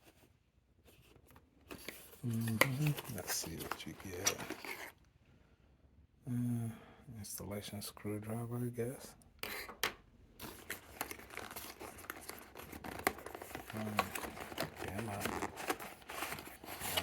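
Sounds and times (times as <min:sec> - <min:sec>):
packaging rustling and crinkling: 0:00.9 - 0:05.0, 0:10.4 - 0:17.0.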